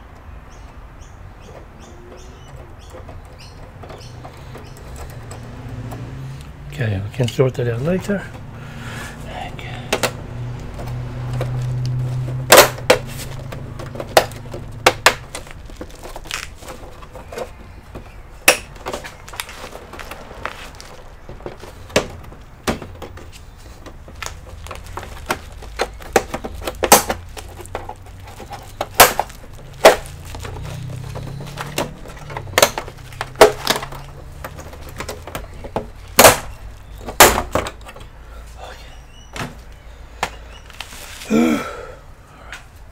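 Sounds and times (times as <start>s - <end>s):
computer parts clicking and knocking: 1.5s - 6.1s, 12.2s - 38.2s.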